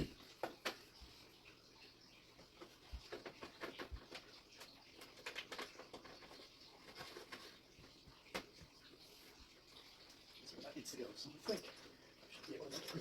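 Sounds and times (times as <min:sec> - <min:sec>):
cables clicking and rustling: 0:00.0 - 0:13.0.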